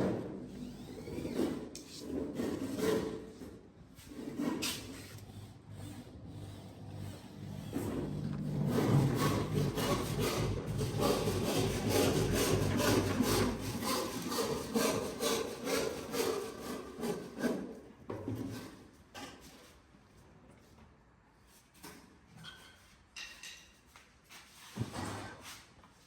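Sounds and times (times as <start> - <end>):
hand tool rasping wood: 7.0 - 17.7.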